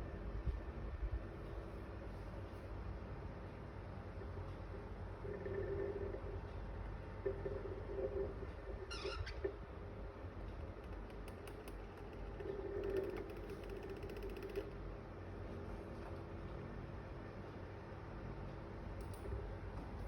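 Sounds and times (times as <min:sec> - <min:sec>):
electric fan humming: 0:00.0 - 0:20.0
falling squeak: 0:08.9 - 0:09.5
faint ticking: 0:09.8 - 0:14.9.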